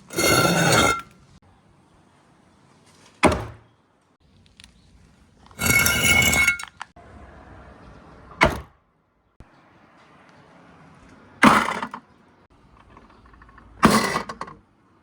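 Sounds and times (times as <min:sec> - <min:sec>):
marble rolling with ringing tone: 0:05.6 - 0:06.8.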